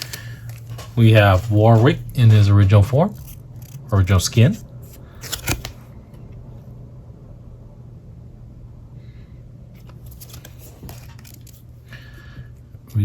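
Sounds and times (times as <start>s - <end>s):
trading cards rustling: 0.0s - 5.8s, 9.8s - 11.9s
steady low hum: 0.0s - 13.0s.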